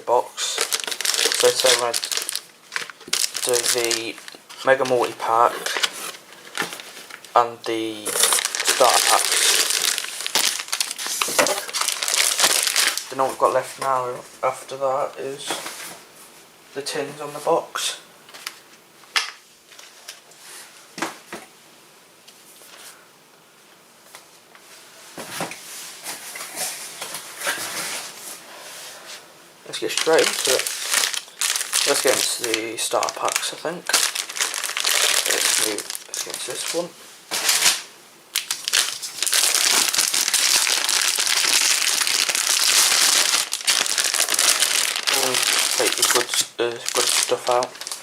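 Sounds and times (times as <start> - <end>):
plastic packaging crinkling: 0.0 - 13.6, 29.7 - 48.0
wrappers rustling: 0.4 - 13.8, 29.7 - 48.0.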